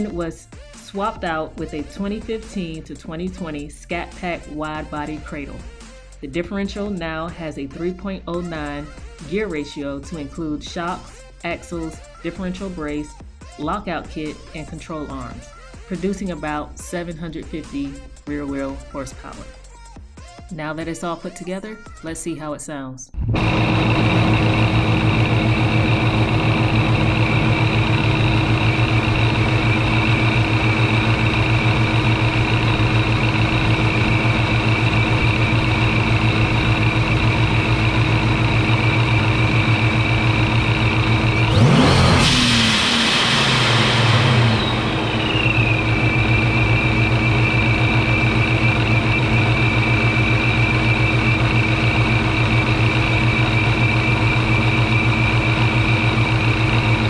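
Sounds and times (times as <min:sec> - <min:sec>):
engine revving: 0:23.2 - 0:57.0
supercharger whine: 0:23.2 - 0:57.0
car engine idling choppy: 0:23.4 - 0:57.0.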